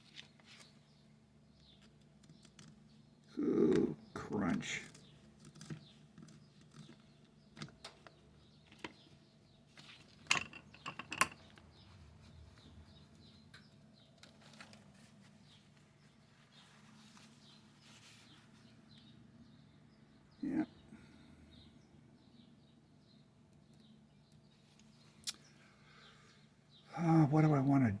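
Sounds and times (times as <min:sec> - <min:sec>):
faint steady hum: 0:00.0 - 0:28.0
metal parts clicking on bench: 0:09.8 - 0:11.6.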